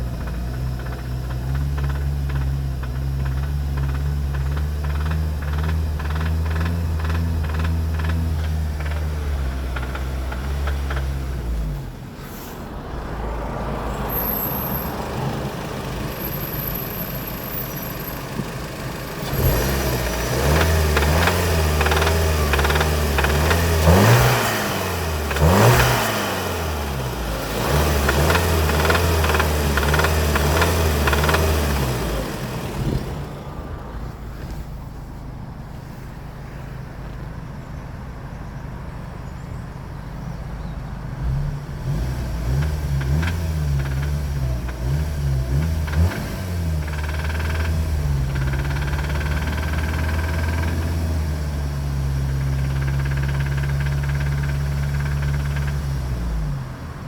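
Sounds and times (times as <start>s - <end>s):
engine knocking: 0.0s - 11.5s, 14.3s - 33.6s, 42.5s - 57.0s
car engine revving: 0.0s - 57.0s.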